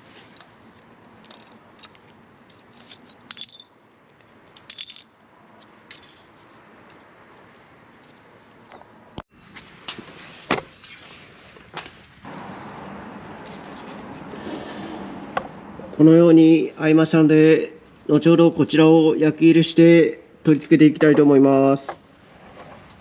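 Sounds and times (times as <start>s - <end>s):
metal tools clinking and rattling: 2.7s - 3.8s, 4.5s - 5.1s, 5.9s - 6.4s.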